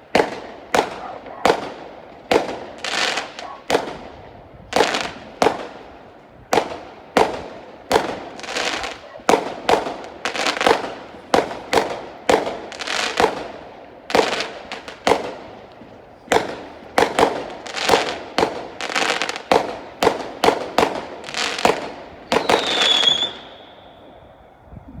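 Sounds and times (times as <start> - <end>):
fireworks bangs: 0.0 - 24.3
high firework whistle: 21.2 - 25.0.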